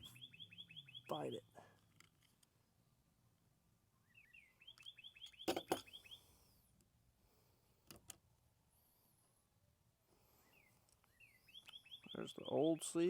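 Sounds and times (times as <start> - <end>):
bird chirping: 0.0 - 1.8, 4.0 - 6.6, 10.3 - 13.0.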